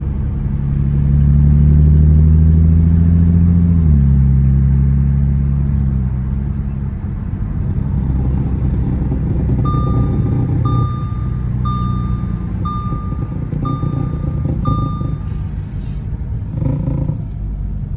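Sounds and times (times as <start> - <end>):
car engine droning: 0.0 - 17.9
drivetrain noise: 7.8 - 17.4
parking sensor beeping: 8.2 - 16.9.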